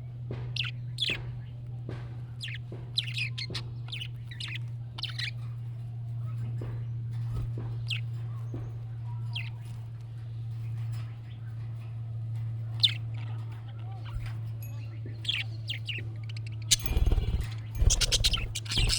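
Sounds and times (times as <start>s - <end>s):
steady low hum: 0.0s - 18.9s
budgerigar chirping: 15.2s - 18.9s.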